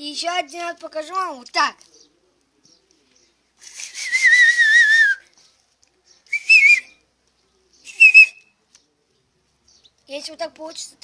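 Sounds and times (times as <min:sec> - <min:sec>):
loud finger whistling: 0:03.6 - 0:05.2, 0:06.3 - 0:07.0, 0:07.9 - 0:08.4.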